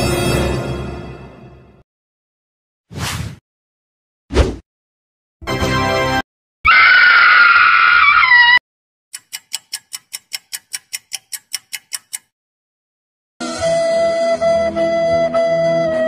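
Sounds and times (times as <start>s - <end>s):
sharp high ticks: 9.1s - 12.3s.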